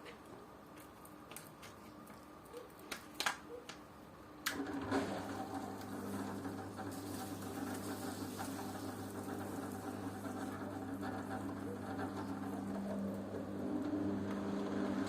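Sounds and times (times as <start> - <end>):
washing machine motor hum: 4.5 - 15.0.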